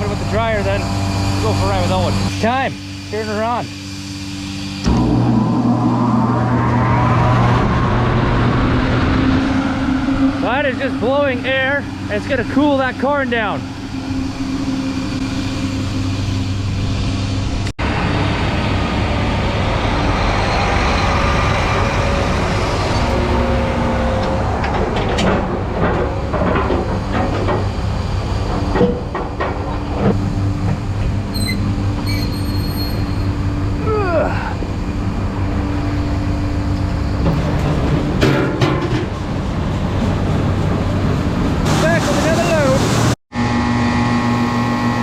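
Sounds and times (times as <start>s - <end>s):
grain dryer fan drone: 0.0s - 32.2s, 33.0s - 45.0s
brief squeal: 31.3s - 33.4s
metallic knocks and clanks: 37.2s - 39.2s.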